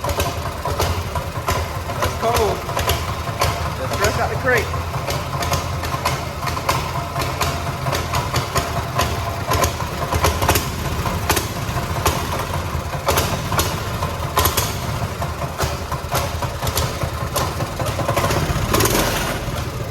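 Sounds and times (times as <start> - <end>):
mini bike engine idling: 0.0 - 19.9.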